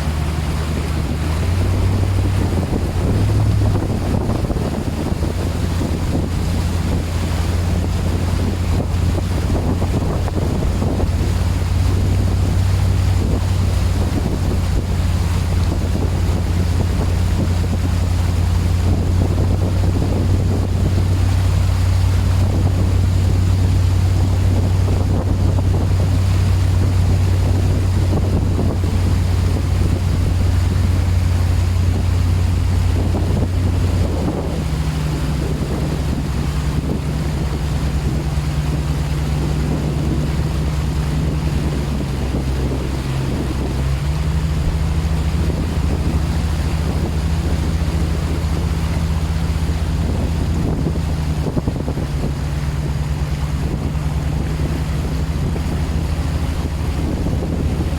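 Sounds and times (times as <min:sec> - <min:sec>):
vehicle engine running: 0:00.0 - 0:57.9
water rushing and splashing: 0:00.0 - 0:57.9.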